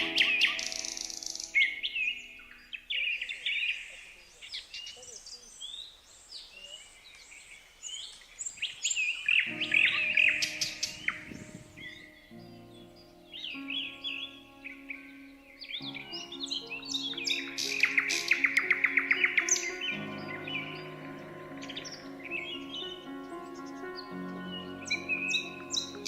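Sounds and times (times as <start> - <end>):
low sustained chord: 0.0 - 2.9, 9.5 - 26.0
birds chirping: 0.0 - 26.0.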